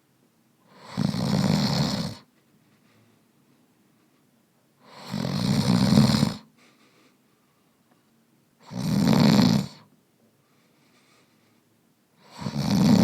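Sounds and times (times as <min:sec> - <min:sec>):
man snoring loudly: 0:00.7 - 0:02.2, 0:04.9 - 0:06.5, 0:08.6 - 0:09.8, 0:12.2 - 0:13.0.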